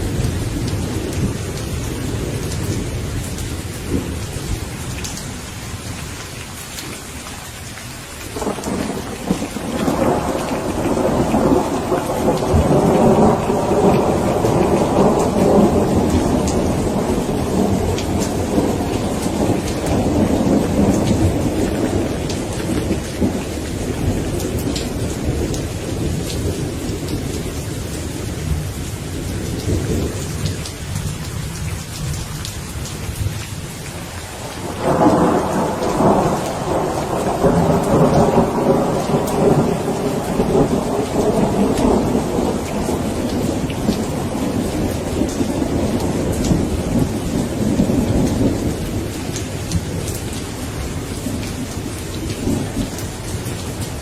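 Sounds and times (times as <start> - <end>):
steady rain: 0.0 - 54.0
rolling thunder: 8.4 - 31.2, 34.3 - 54.0.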